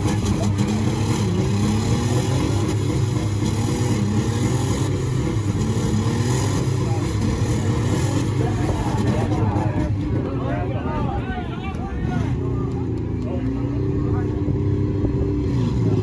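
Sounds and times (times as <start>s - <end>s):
car engines running and revving: 0.0s - 16.0s.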